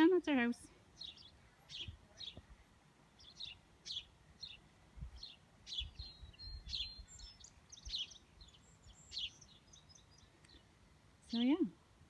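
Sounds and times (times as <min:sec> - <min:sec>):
songbirds chirping: 0:00.0 - 0:12.0.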